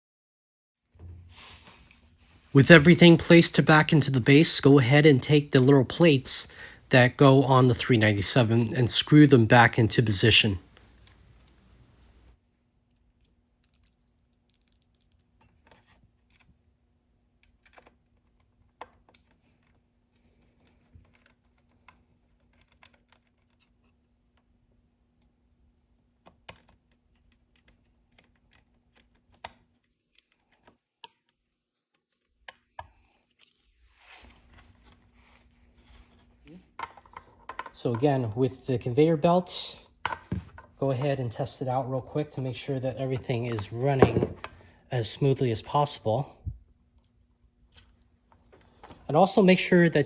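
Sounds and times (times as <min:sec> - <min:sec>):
screwdriver being handled: 0:43.0 - 0:44.6.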